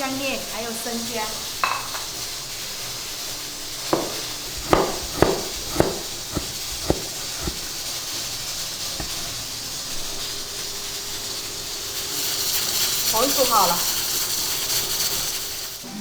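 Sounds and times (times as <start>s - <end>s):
cooking hiss on stove: 0.0s - 16.0s
utensils knocking on cookware: 4.0s - 7.8s, 9.0s - 9.3s.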